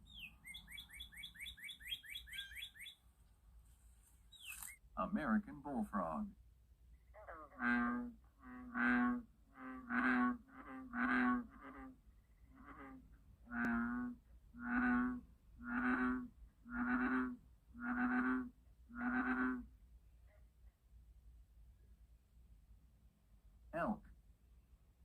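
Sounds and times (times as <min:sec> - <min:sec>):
bullfrog croaking: 0:07.1 - 0:19.7.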